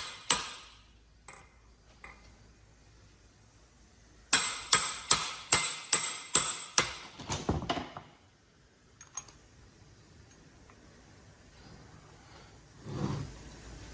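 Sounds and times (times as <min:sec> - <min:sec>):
hammer striking metal: 0:00.0 - 0:01.5, 0:04.3 - 0:07.1.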